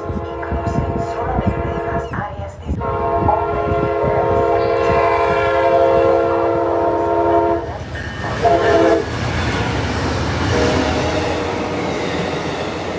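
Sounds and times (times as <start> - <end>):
passing train rumble: 0.0 - 12.9
locomotive air horn blasts: 2.8 - 7.7, 8.4 - 9.1, 10.5 - 11.6.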